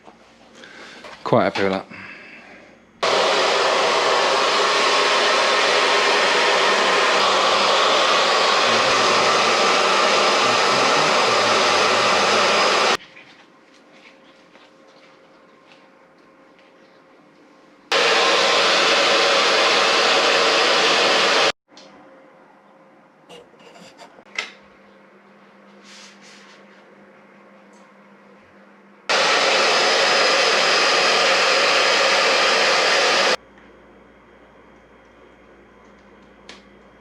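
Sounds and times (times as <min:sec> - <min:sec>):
heat gun blowing: 0:03.0 - 0:13.0, 0:17.9 - 0:21.6, 0:29.1 - 0:33.4.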